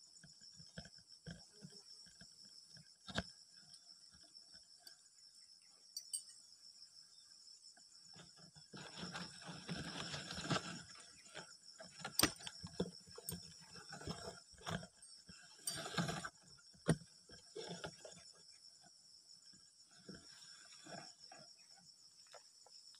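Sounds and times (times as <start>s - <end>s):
insect chorus: 0.0s - 22.9s
rustling and handling noise: 8.2s - 18.5s.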